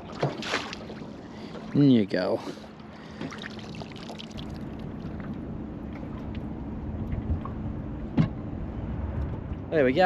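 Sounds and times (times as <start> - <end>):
water splashing and trickling: 0.0 - 7.7.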